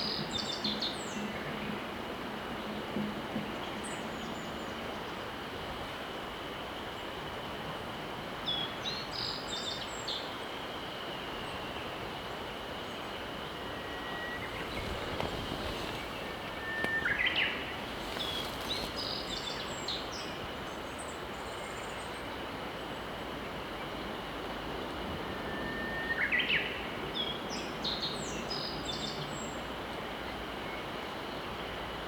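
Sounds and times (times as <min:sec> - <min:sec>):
river rushing: 0:12.6 - 0:21.3
songbird twittering: 0:13.5 - 0:20.4
thin whistled bird notes: 0:13.6 - 0:20.2.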